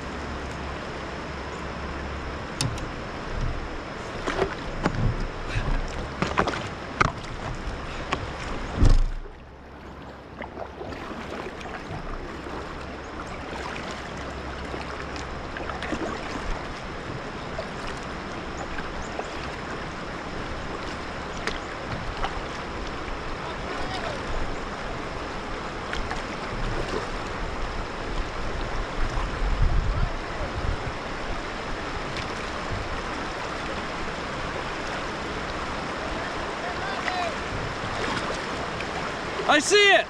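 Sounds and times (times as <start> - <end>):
river water rushing: 0.0 - 40.0
kayak knocks and splashes: 2.6 - 9.4, 10.0 - 20.0, 20.6 - 24.5, 25.8 - 27.4, 36.7 - 39.5.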